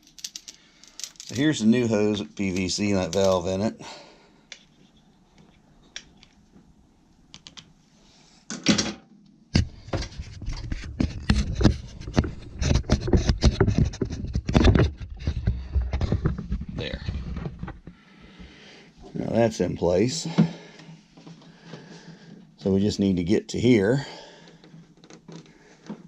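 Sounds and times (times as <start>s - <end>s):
hose fittings clicking and knocking: 2.2s - 3.6s, 24.4s - 26.0s.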